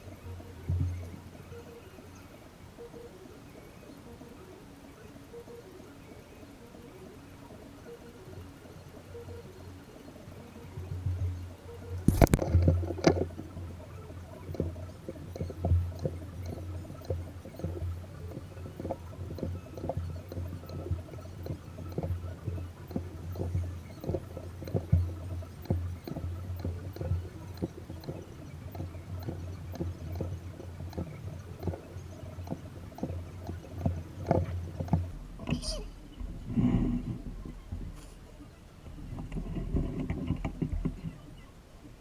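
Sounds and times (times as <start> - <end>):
steady low hum: 0.0 - 42.0
light clicks and knocks: 10.8 - 41.5.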